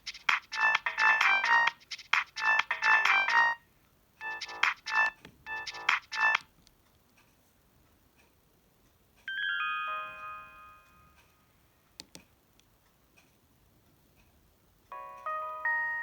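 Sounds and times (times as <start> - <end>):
polyphonic phone chime jingles: 4.2 - 6.4, 9.3 - 11.2.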